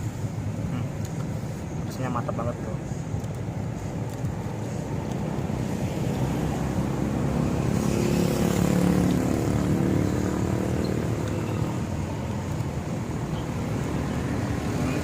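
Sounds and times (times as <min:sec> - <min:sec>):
street traffic rumbling: 0:00.0 - 0:15.0
vehicle engine passing: 0:04.7 - 0:15.0.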